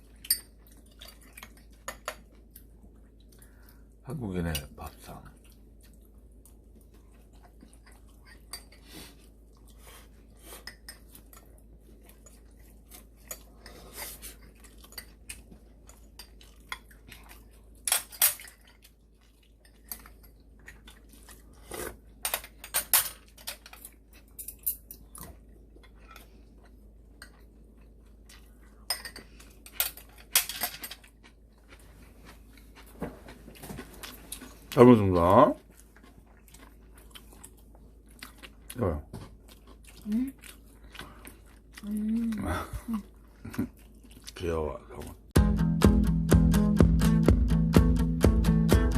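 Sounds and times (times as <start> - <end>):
cutlery clinking on dishes: 28.9 - 31.0.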